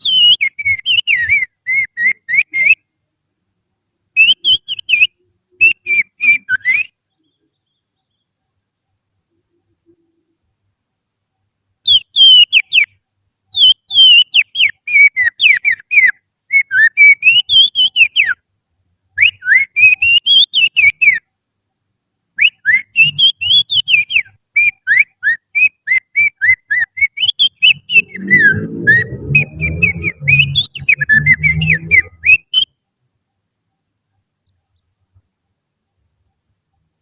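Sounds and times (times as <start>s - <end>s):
person whistling bird song: 0.0s - 2.8s, 4.2s - 8.2s, 13.6s - 18.4s, 19.2s - 21.2s, 22.4s - 32.7s.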